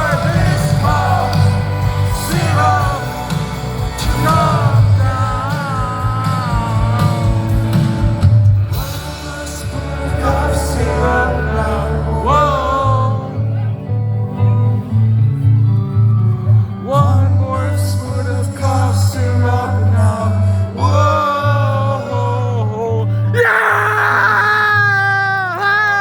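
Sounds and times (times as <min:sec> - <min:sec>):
man singing: 0:00.0 - 0:15.0, 0:16.7 - 0:26.0
live rock band playing: 0:00.0 - 0:20.3
bass pulsing: 0:00.0 - 0:25.6.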